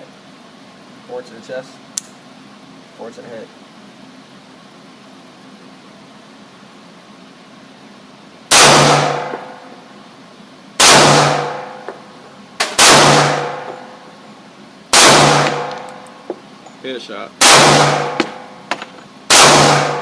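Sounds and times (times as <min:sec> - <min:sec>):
gunshots with ringing echo: 0:08.5 - 0:09.6, 0:10.8 - 0:11.9, 0:12.6 - 0:14.0, 0:14.9 - 0:16.0, 0:17.4 - 0:18.6, 0:19.3 - 0:20.0.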